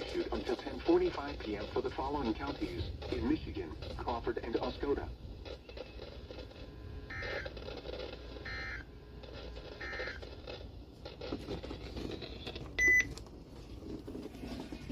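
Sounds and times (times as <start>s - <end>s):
radio hiss: 0.0s - 8.4s.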